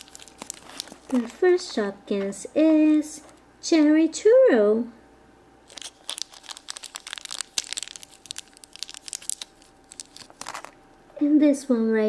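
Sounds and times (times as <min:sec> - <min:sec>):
plastic packaging crinkling: 0:00.0 - 0:01.9, 0:05.6 - 0:10.8.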